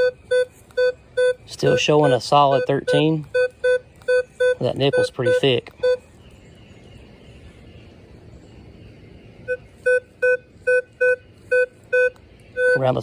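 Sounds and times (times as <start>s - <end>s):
metal detector short beeps: 0.0s - 6.0s, 9.5s - 13.0s.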